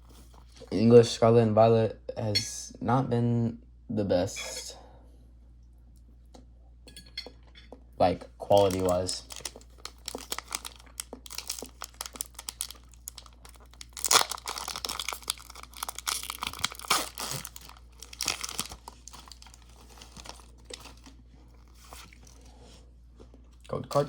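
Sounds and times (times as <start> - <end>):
foil pack crinkling and tearing: 8.5 - 22.4.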